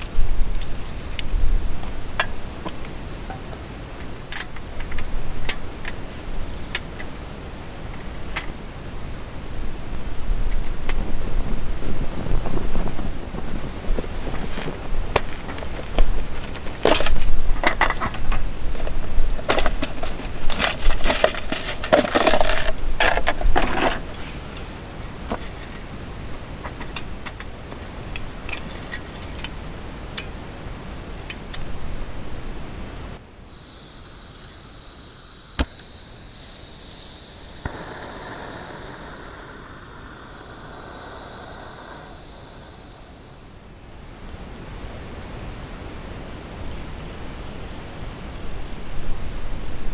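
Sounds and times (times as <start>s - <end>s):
crickets trilling: 0.0s - 49.9s
low rumble: 37.7s - 43.6s.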